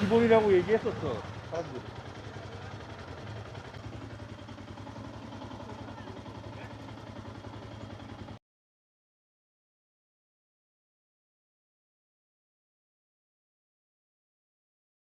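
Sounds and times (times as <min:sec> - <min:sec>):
engine idling: 0:00.0 - 0:08.4.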